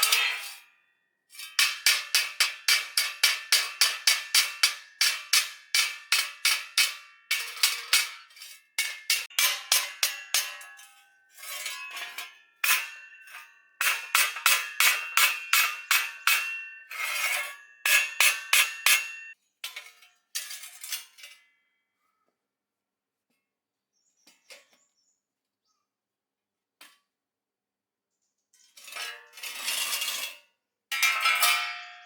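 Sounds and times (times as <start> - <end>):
hammer clanging on metal: 1.5 - 8.2, 8.8 - 19.4.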